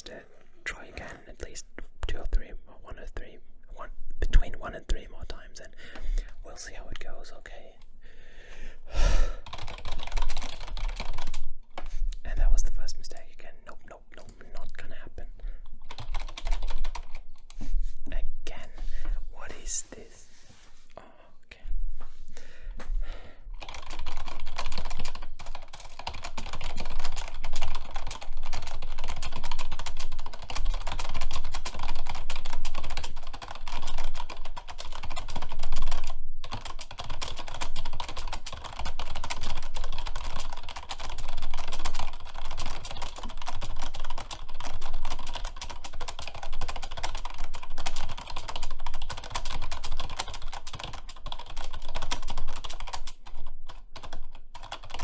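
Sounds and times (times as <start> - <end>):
fast keyboard typing: 5.8 - 7.8, 8.9 - 13.4, 14.2 - 17.7, 23.5 - 55.0.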